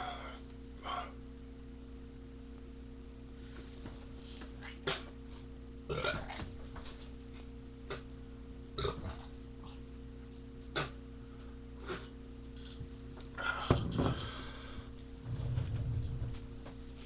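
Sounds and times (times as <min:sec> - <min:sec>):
steady electrical hum: 0:00.0 - 0:17.0
man burping: 0:05.9 - 0:06.4, 0:08.8 - 0:09.3, 0:10.7 - 0:11.0.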